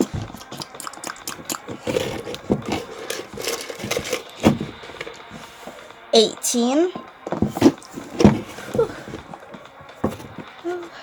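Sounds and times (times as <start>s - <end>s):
plastic toys clicking and scraping: 0.0s - 5.8s.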